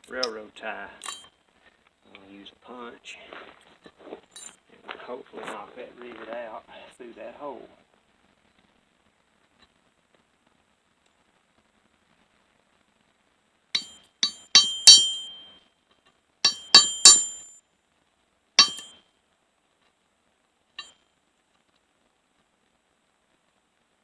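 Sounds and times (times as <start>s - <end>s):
hammer blows on steel punch: 13.8s - 15.6s, 16.5s - 17.5s, 18.6s - 19.0s.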